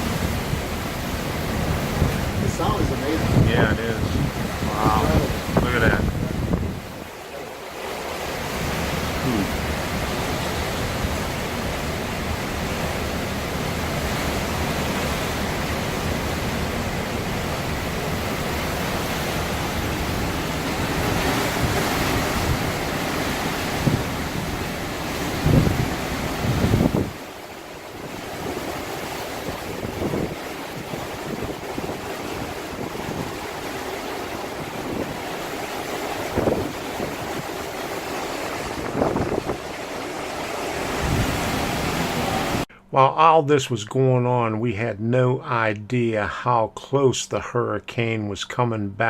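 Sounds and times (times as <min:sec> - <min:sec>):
strong wind rushing: 0:00.0 - 0:07.2, 0:17.7 - 0:27.3, 0:28.0 - 0:33.6, 0:36.2 - 0:42.7
wind buffeting microphone: 0:00.0 - 0:07.2, 0:08.2 - 0:42.6.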